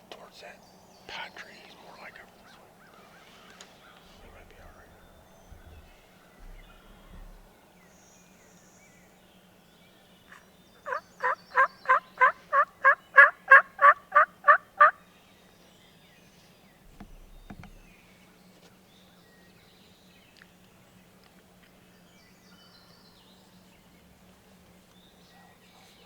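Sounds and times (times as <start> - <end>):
wild turkey yelps: 10.3 - 15.0.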